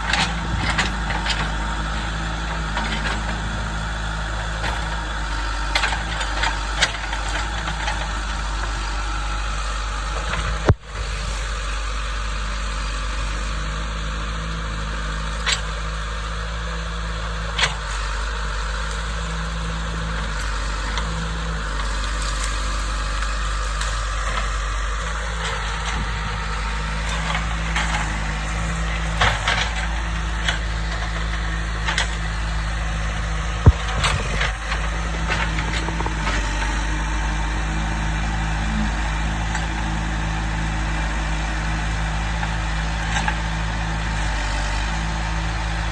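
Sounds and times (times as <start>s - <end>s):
diesel engine running: 0.0s - 45.9s
sharp knocks and cracks: 33.6s - 36.7s.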